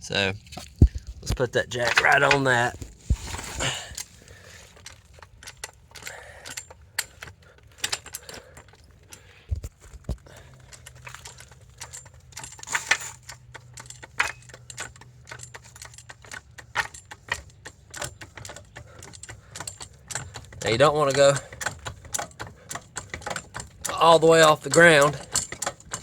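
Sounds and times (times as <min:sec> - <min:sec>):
car jack metallic clicks and rattles: 0:01.6 - 0:26.0.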